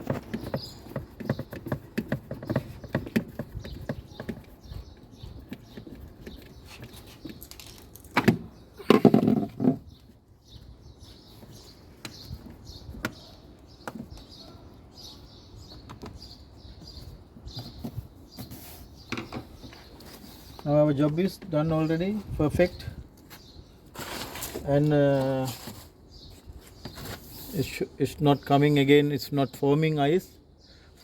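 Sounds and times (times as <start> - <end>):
small birds chirping: 0.0 - 31.0
parts knocking and clattering: 5.4 - 9.9.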